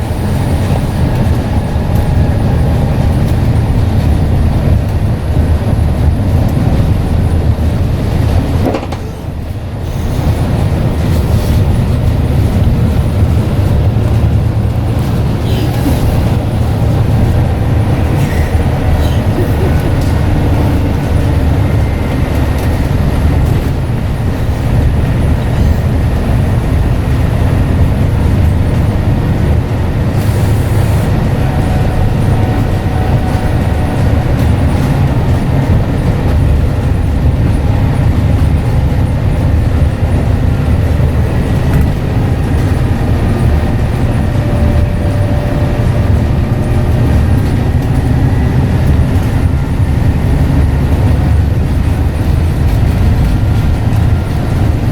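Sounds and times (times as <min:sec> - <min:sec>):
bus diesel engine rumble: 0:00.0 - 0:54.9
faint turbo whistle: 0:30.2 - 0:35.2.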